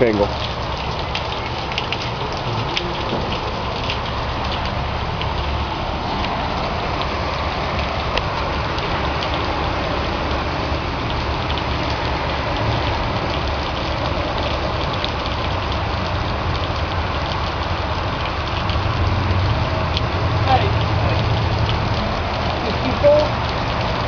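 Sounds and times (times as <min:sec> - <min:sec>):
low rumble of vehicle engines: 0:00.0 - 0:24.0
rain hiss: 0:00.0 - 0:24.0
raindrop ticks: 0:00.0 - 0:24.0.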